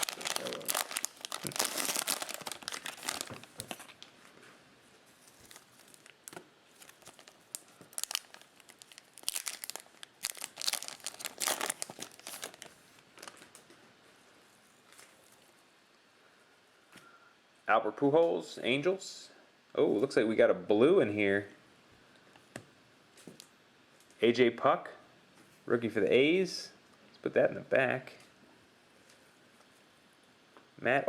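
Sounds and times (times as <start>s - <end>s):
cellophane wrapper crinkling: 0.0s - 4.2s, 5.1s - 13.7s.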